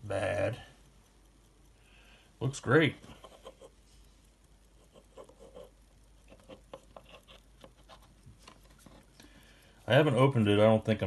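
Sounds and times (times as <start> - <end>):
pocket watch clicking and rubbing: 3.2 - 9.2.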